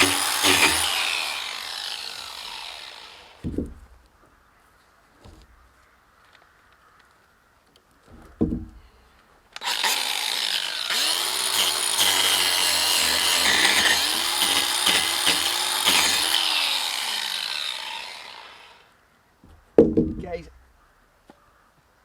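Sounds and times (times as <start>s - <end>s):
angle grinder cutting wood: 0.0s - 3.5s, 9.6s - 18.9s.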